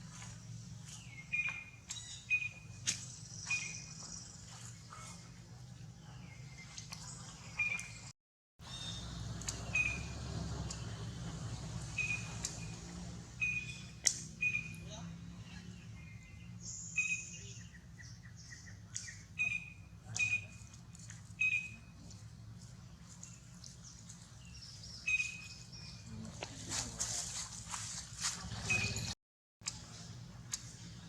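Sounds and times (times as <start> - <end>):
high-pitched chirping calls: 8.7 - 10.2.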